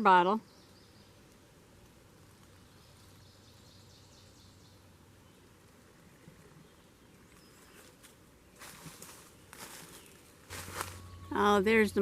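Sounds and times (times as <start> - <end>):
faint bird trill: 9.9 - 12.0.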